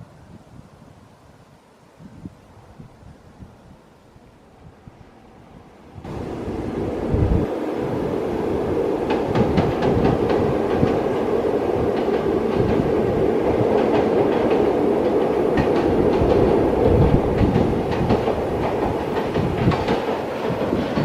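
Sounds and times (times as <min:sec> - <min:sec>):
train rolling rumble: 0:02.6 - 0:21.0
train wheels clacking on rail joints: 0:08.2 - 0:21.0.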